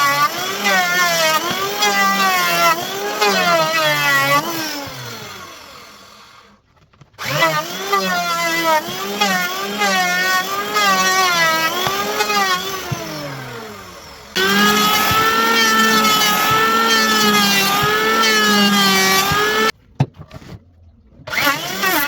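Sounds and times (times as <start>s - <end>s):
power tool motor whining: 0.0s - 6.6s, 7.2s - 19.7s, 21.3s - 22.0s.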